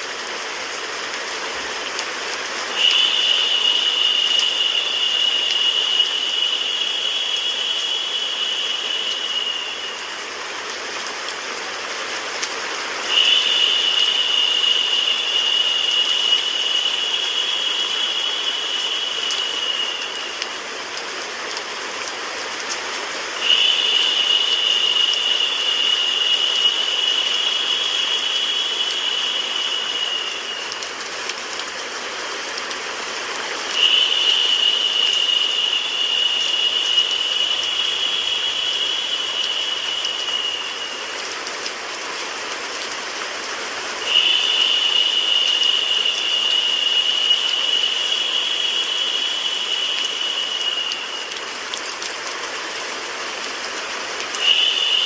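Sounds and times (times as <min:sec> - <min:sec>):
steady rain: 0:00.0 - 0:55.0
bright high hiss: 0:02.1 - 0:11.2, 0:13.0 - 0:20.8, 0:23.4 - 0:31.2, 0:33.5 - 0:41.4, 0:44.0 - 0:51.7, 0:54.4 - 0:55.0.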